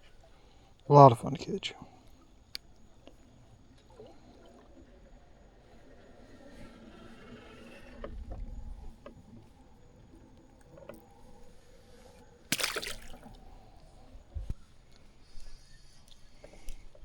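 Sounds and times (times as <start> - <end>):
fish splashing in water: 12.4 - 13.8.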